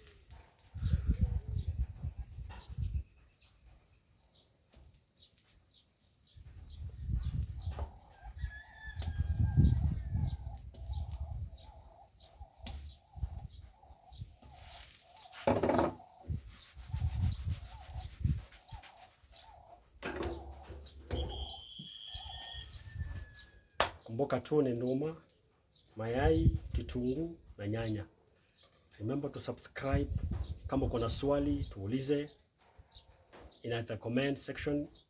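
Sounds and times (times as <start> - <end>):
small birds chirping: 0.0 - 35.0
chickens clucking: 17.0 - 23.2.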